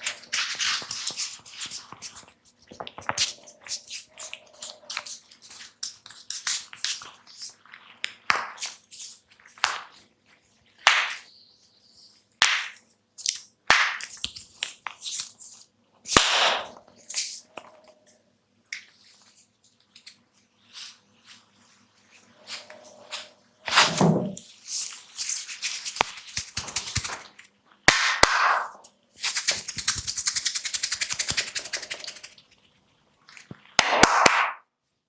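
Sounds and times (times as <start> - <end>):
sharp cracks and snaps: 12.4 - 15.4, 16.1 - 17.2, 25.8 - 32.4, 33.3 - 34.7
hands rubbing swishes: 20.8 - 27.3, 28.6 - 32.4.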